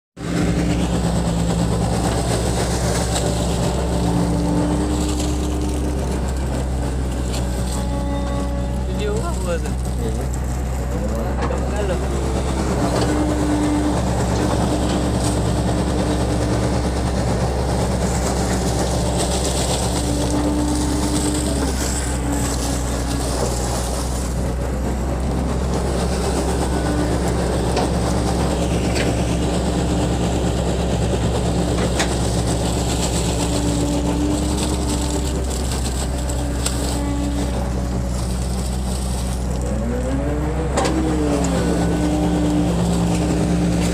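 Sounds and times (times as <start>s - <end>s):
excavator diesel engine running: 0.2s - 43.9s
higher hum: 0.2s - 43.9s.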